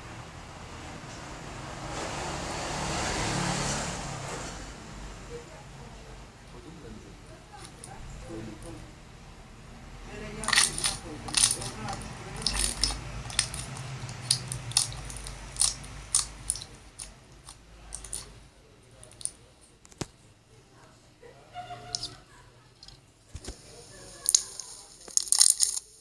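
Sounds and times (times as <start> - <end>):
slime clicking and popping: 10.4 - 18.3.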